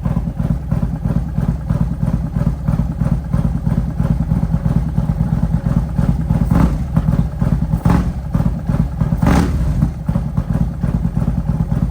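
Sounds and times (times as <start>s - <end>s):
motorcycle engine idling: 0.0s - 11.9s
motorcycle throttle blips: 6.0s - 10.6s.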